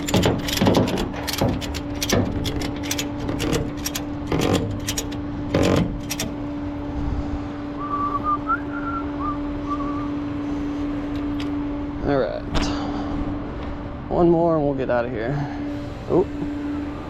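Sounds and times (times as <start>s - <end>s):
ratchet strap clacks: 0.0s - 6.4s
truck engine hum: 0.0s - 14.1s.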